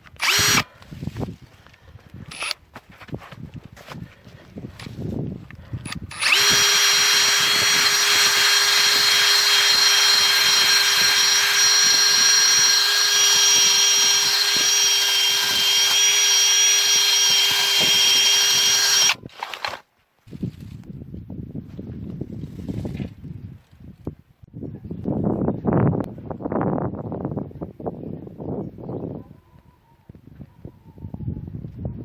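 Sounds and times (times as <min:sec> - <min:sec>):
electric power tool whining: 0:00.0 - 0:00.8, 0:02.3 - 0:02.6, 0:05.8 - 0:19.8.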